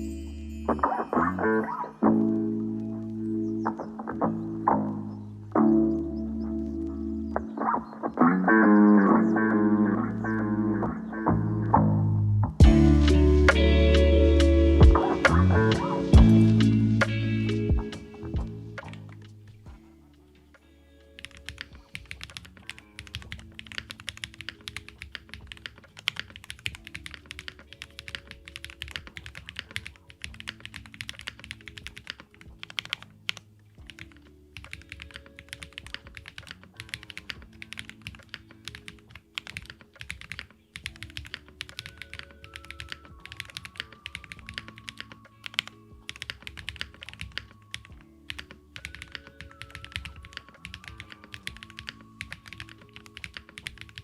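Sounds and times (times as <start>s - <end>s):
soft background music: 0.0s - 54.0s
fast typing on mechanical keyboard: 21.2s - 54.0s.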